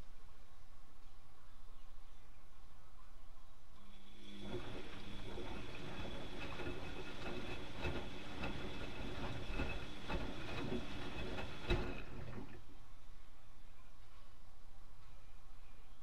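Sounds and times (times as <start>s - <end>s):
motor whine: 3.9s - 12.6s
washing machine drum turning: 4.2s - 12.7s
laundry knocking and clicking: 4.4s - 12.6s.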